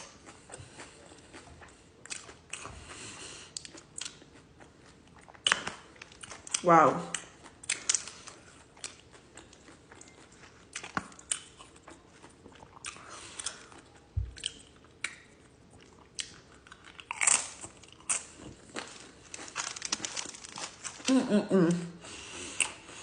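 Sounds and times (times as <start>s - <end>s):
person chewing food: 0.0s - 21.2s, 22.0s - 23.0s
wet clicks and crunches: 7.2s - 9.0s, 16.2s - 21.1s.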